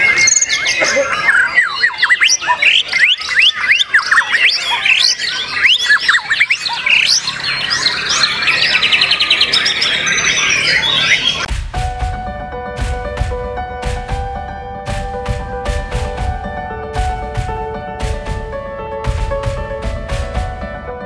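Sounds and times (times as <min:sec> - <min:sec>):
bird singing: 0:00.0 - 0:11.5.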